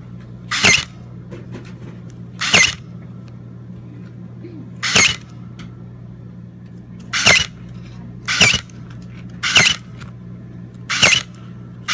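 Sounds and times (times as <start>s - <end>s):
electric stapler clacking: 0.5s - 1.0s, 2.4s - 2.8s, 4.8s - 5.3s, 7.2s - 7.6s, 8.3s - 8.8s, 9.4s - 10.1s, 10.9s - 11.9s.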